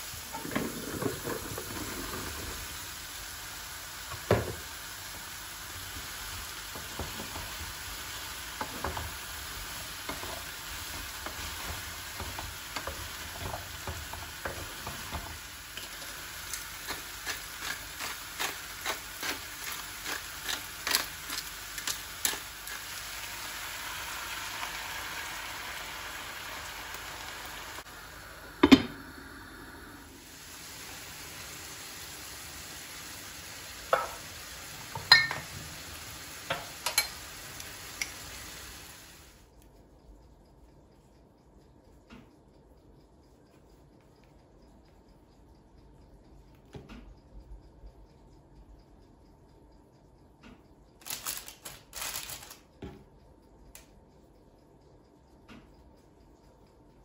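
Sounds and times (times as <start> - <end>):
food sizzling in a frying pan: 0.0 - 39.4
utensil clicking against pan: 6.7 - 23.5.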